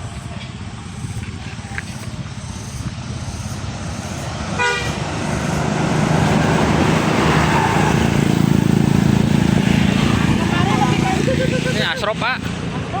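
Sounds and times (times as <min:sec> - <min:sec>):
bus engine approaching: 0:00.0 - 0:13.0
bus horn toot: 0:04.6 - 0:05.1.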